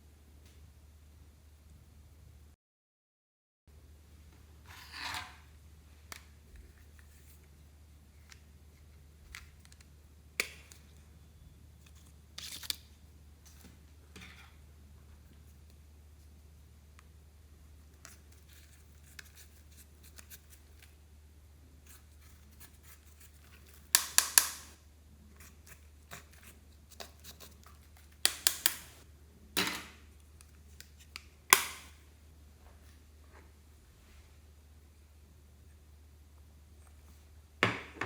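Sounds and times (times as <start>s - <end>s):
sharp snapping clicks: 24.0s - 24.7s, 28.3s - 29.0s, 31.2s - 31.9s.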